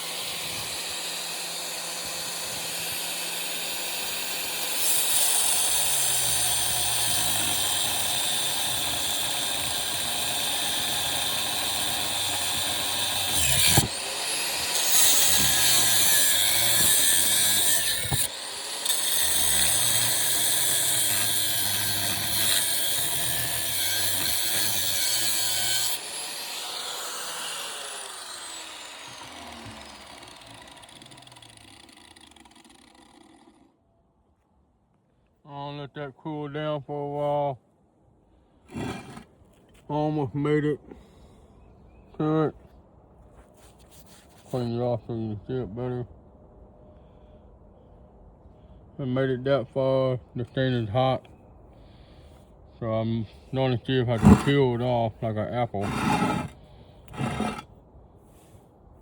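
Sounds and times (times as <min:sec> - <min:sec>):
angle grinder cutting metal: 0:00.0 - 0:33.5, 0:54.1 - 0:54.9, 0:55.8 - 0:57.7.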